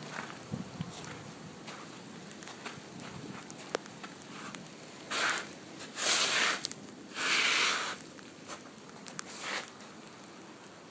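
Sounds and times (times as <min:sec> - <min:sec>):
hailstones pattering: 0:01.8 - 0:10.4.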